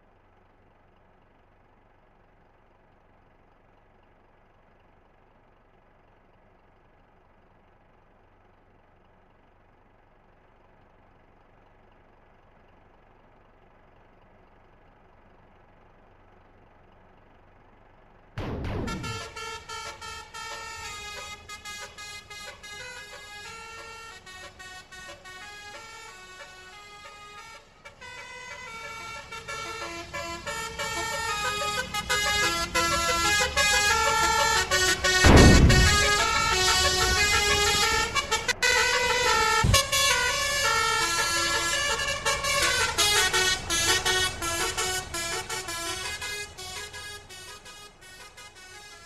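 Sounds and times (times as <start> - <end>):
low engine hum: 0.0 - 49.0
roadside traffic noise: 0.0 - 49.0
musical bus horn tune: 18.4 - 49.0.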